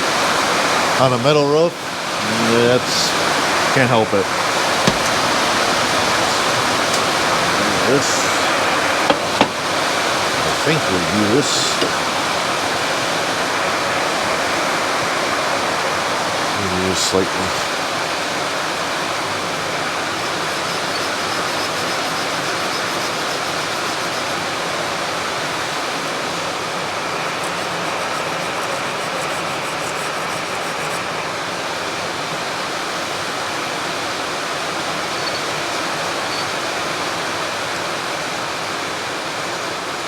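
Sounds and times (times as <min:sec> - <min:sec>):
rain on a metal roof: 0:00.0 - 0:28.8, 0:31.0 - 0:40.0.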